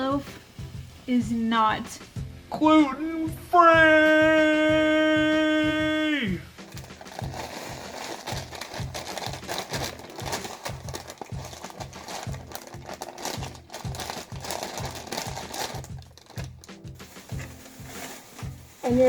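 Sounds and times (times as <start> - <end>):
background music with beat: 0.0 - 19.0
crackers being crushed: 6.7 - 18.9
plastic bag crinkling: 6.7 - 19.0.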